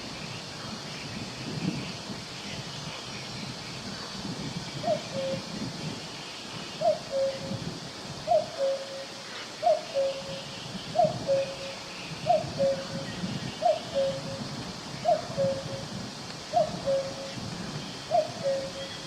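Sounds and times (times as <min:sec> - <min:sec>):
cuckoo calling: 0:04.8 - 0:05.6, 0:06.8 - 0:07.6, 0:08.3 - 0:17.4, 0:18.0 - 0:19.0.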